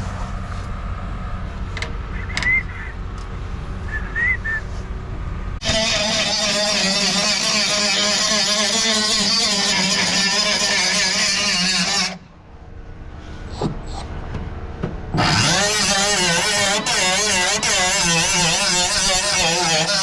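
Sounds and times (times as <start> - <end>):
angle grinder on metal: 5.6 - 12.2, 15.2 - 20.0.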